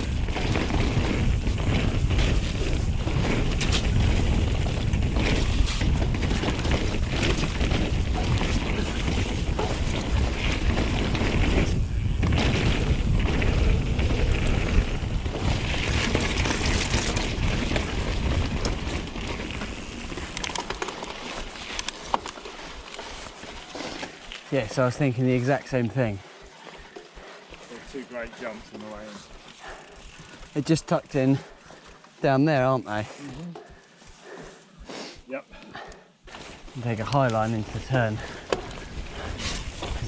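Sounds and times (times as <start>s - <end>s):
wind buffeting microphone: 0.0s - 20.3s, 37.6s - 40.0s
tyres rumbling over trail: 0.0s - 34.5s, 36.2s - 40.0s
bike clicks and rattles: 0.0s - 34.8s, 35.7s - 40.0s.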